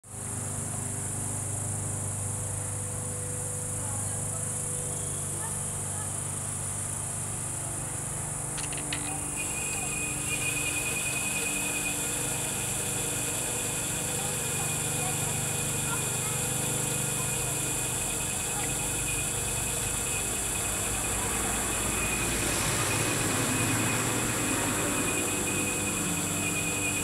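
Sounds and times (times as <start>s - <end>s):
hydraulic whine: 0.2s - 27.0s
hydraulic hum and hiss: 3.0s - 27.0s
quick clicks: 8.6s - 9.2s.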